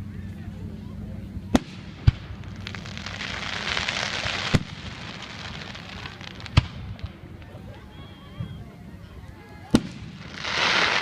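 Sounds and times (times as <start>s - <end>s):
fireworks bangs: 1.5s - 7.3s, 9.7s - 11.0s
fireworks crackle: 1.5s - 7.6s, 9.7s - 11.0s.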